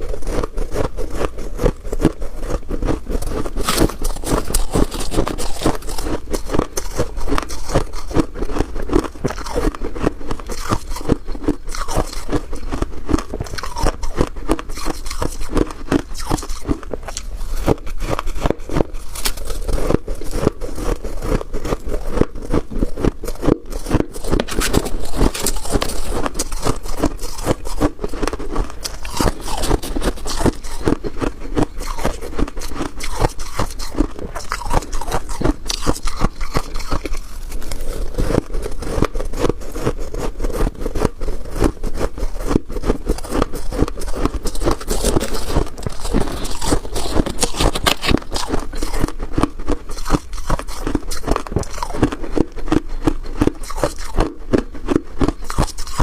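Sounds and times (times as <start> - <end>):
crunching and chewing ice: 0.0 - 56.0.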